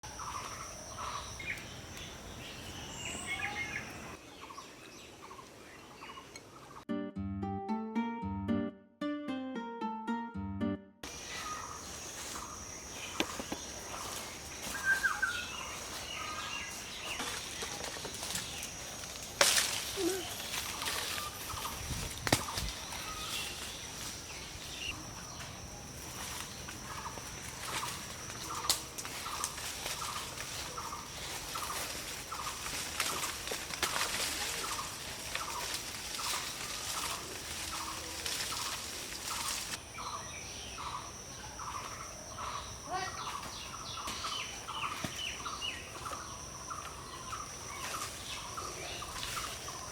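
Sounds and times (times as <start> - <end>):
steady high-pitched whine: 11.0 - 19.9.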